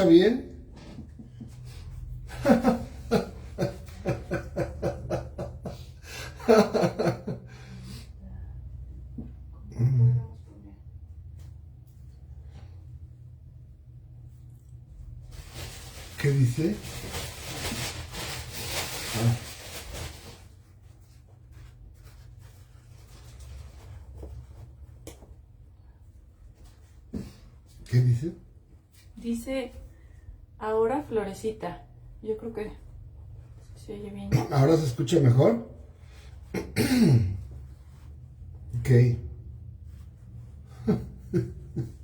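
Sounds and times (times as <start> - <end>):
person laughing: 2.3 - 7.5.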